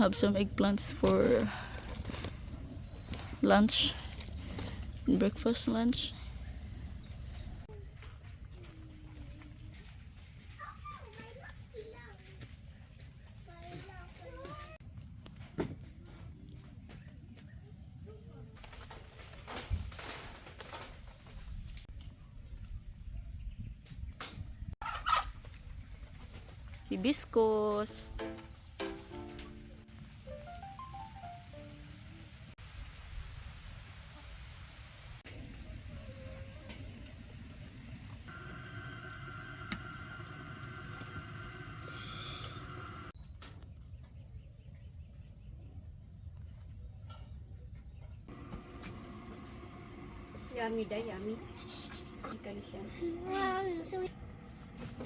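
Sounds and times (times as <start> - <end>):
insects buzzing: 23.4 - 45.5, 47.8 - 55.0.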